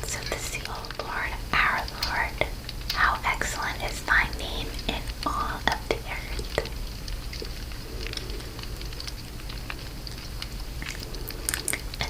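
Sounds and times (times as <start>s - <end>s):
fire crackling and popping: 0.0s - 12.0s.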